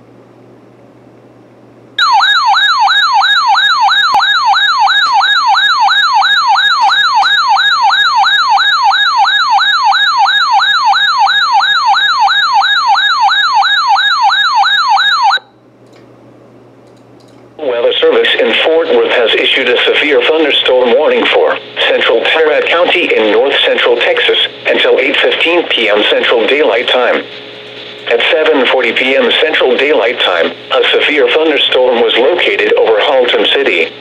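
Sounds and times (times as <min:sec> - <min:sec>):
warbling alert siren: 0:02.0 - 0:15.6
faint radio hiss and hum: 0:17.5 - 0:34.0.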